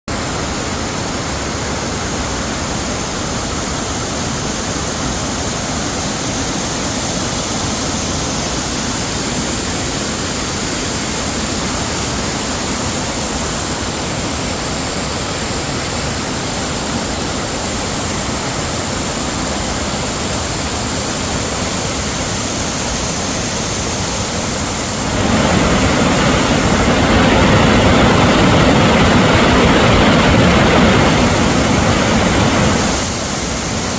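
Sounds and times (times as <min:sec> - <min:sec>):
waterfall rushing: 0:00.1 - 0:33.9.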